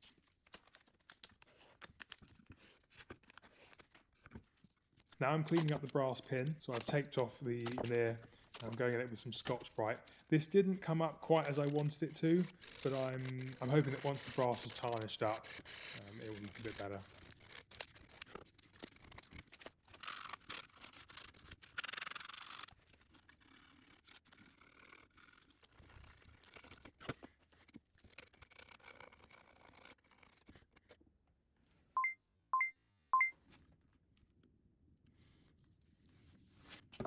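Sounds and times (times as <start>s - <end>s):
short high beeps: 32.0s - 33.3s.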